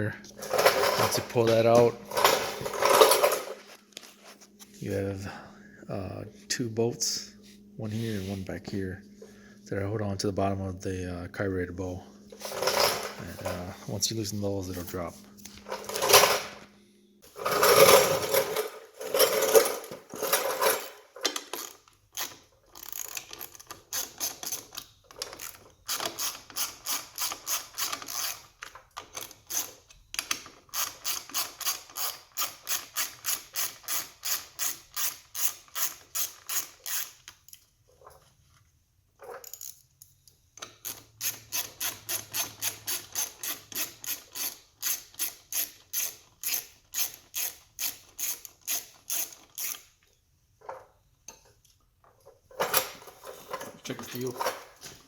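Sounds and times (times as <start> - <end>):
ratchet wrench clicking: 21.6 - 24.7, 25.4 - 28.4, 30.7 - 37.2, 40.6 - 49.9.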